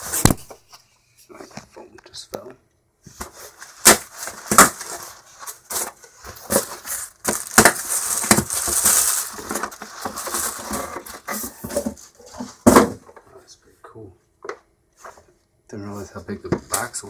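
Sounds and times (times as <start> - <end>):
packaging rustling and crumpling: 3.2 - 12.2.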